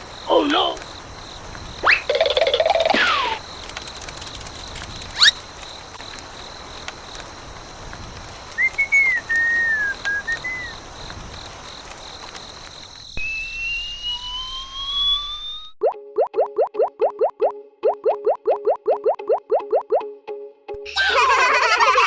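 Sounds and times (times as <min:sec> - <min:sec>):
upward whistle swoop: 0:01.8 - 0:02.1, 0:08.6 - 0:10.7, 0:13.2 - 0:15.8
warbling whistle: 0:01.8 - 0:03.4, 0:08.6 - 0:10.7, 0:13.2 - 0:15.8
rising slide whistle: 0:08.6 - 0:10.7, 0:13.2 - 0:15.8.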